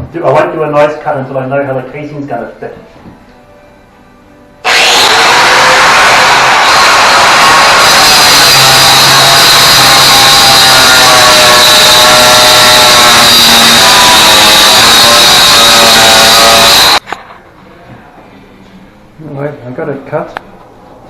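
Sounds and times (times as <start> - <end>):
power saw cutting drywall: 4.6 - 17.0.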